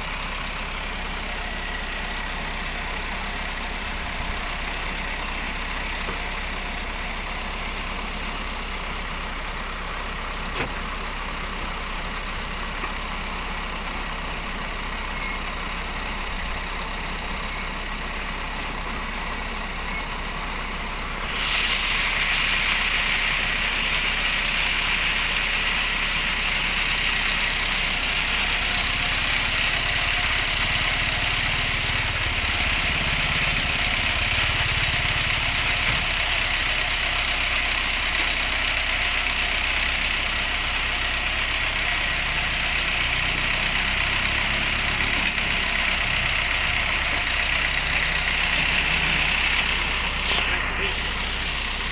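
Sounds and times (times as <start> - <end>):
engine running: 0.0 - 51.9
bright hiss: 21.2 - 24.3.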